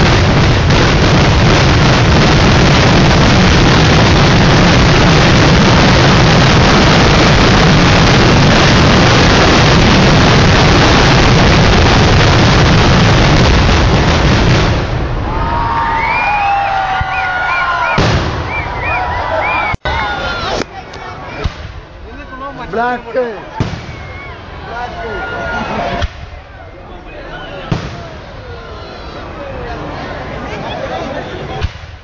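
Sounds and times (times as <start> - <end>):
firecrackers going off: 0.0 - 32.0
crowd whistling and shouting: 15.2 - 20.6, 22.3 - 31.6.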